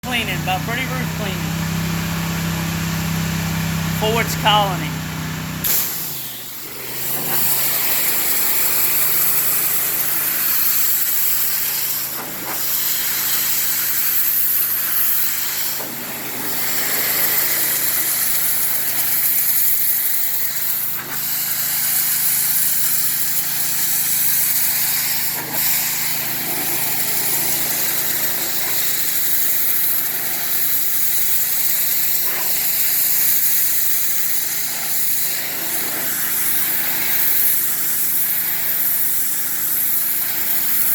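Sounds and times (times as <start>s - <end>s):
pressure washer engine running: 0.0s - 40.9s
pressure washer spraying water: 0.0s - 40.9s.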